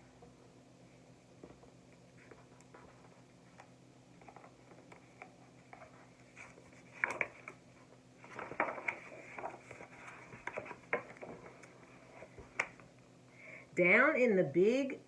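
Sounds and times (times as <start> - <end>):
book pages rustling and tapping: 1.4 - 12.9.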